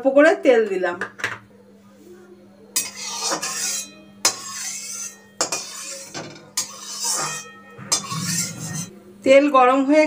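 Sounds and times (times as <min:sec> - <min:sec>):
metal spoon clinking against pan: 0:02.8 - 0:08.9
spoon scraping pan bottom: 0:02.8 - 0:08.9.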